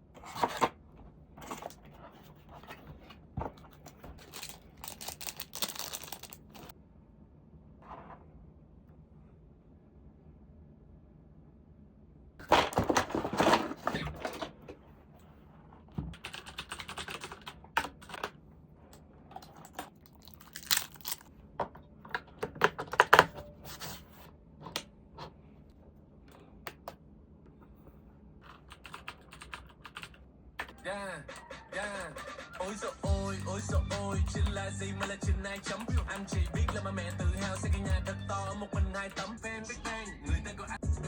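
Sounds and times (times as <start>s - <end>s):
mechanical keyboard typing: 4.2s - 6.7s, 16.2s - 18.3s, 28.4s - 30.8s, 35.0s - 37.8s.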